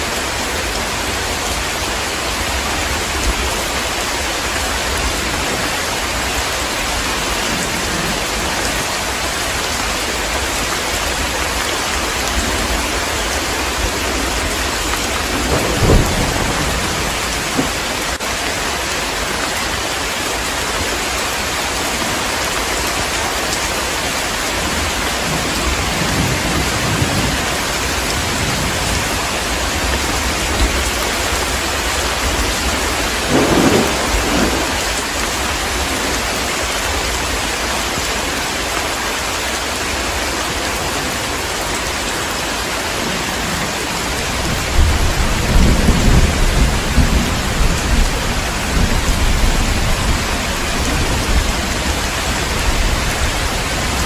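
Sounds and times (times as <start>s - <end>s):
heavy rain pouring: 0.0s - 54.0s
rolling thunder rumble: 12.0s - 18.3s, 24.6s - 37.3s, 43.0s - 54.0s.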